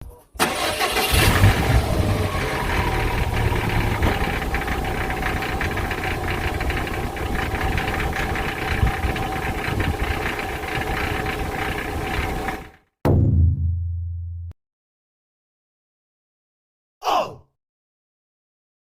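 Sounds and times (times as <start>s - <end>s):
car engine idling: 0.4s - 12.8s
metallic exhaust rattle: 2.8s - 12.7s.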